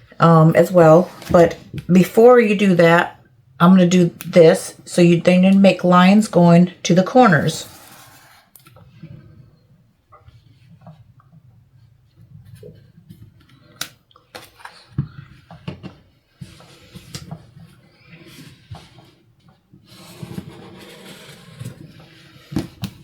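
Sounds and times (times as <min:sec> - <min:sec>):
scratchy rustling: 0:19.9 - 0:22.5.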